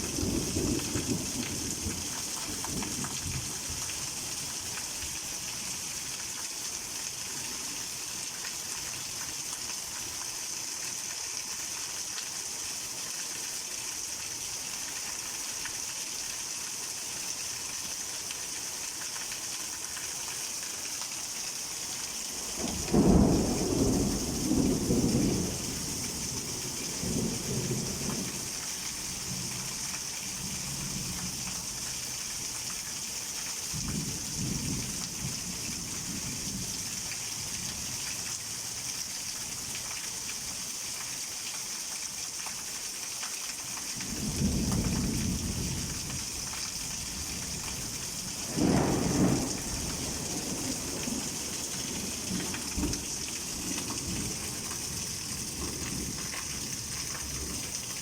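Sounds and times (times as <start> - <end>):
heavy rain pouring: 0.0 - 58.0
thunder rumbling: 22.5 - 28.5, 47.0 - 57.7.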